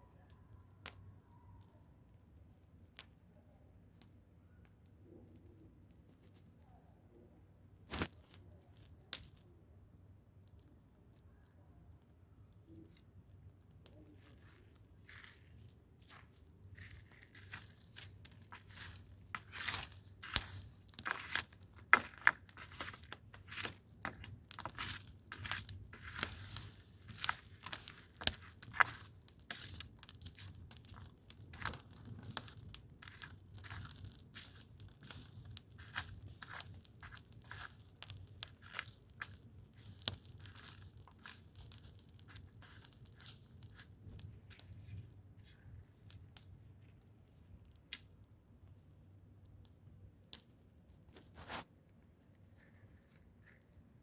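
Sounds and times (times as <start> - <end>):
dry leaves and twigs crackling: 7.9 - 9.4, 11.9 - 47.0.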